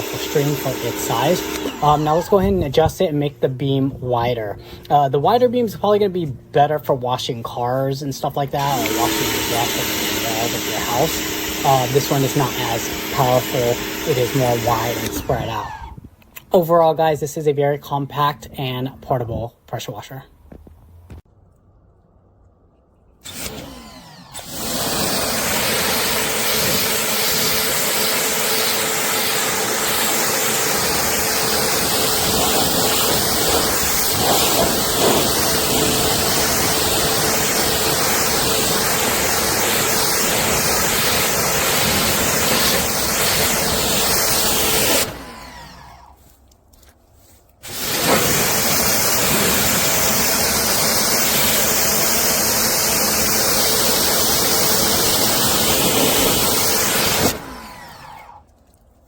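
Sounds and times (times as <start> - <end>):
water spray hissing: 0.0 - 2.8, 8.6 - 15.6, 24.6 - 45.1
pressure washer motor hum: 0.0 - 16.5, 23.2 - 46.5, 47.6 - 58.8.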